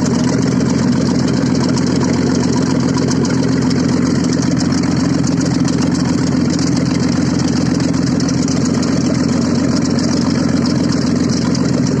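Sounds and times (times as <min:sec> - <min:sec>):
car engine idling without exhaust: 0:00.0 - 0:12.0.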